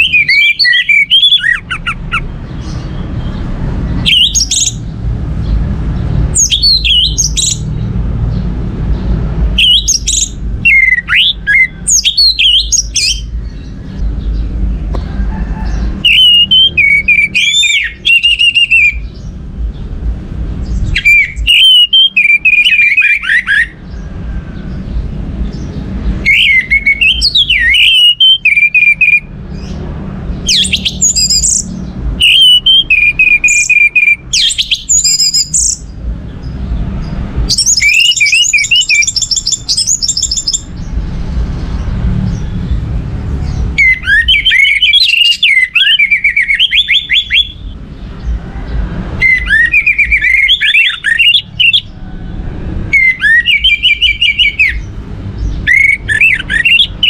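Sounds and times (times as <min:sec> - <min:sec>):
thrush singing whistled notes: 0:00.0 - 0:14.5, 0:15.6 - 0:19.9, 0:20.6 - 0:36.0, 0:37.0 - 0:41.0, 0:43.5 - 0:47.9, 0:49.1 - 0:57.0
low rumble: 0:19.0 - 0:21.6.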